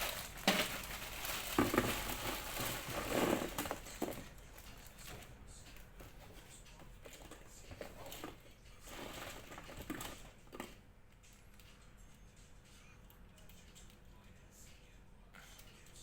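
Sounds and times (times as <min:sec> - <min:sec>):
faint rustling: 0:00.0 - 0:10.4.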